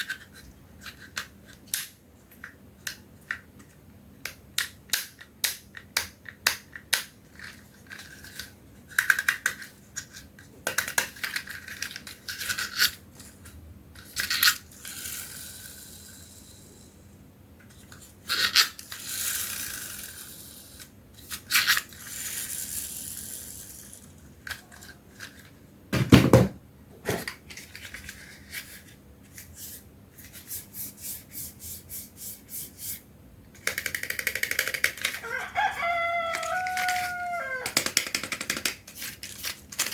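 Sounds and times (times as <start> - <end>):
plastic toys clattering: 6.4 - 13.0, 33.6 - 35.3, 36.3 - 39.9
toys rustling and rolling: 33.7 - 39.9.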